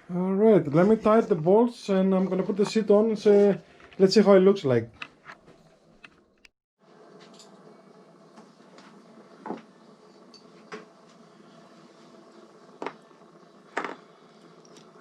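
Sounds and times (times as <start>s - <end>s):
low steady hum: 6.8s - 15.0s.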